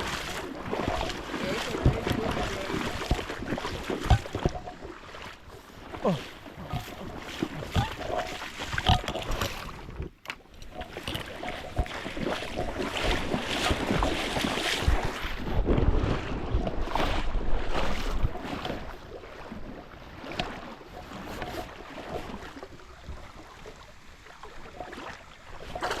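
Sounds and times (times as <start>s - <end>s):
creek water rushing: 0.0s - 9.6s.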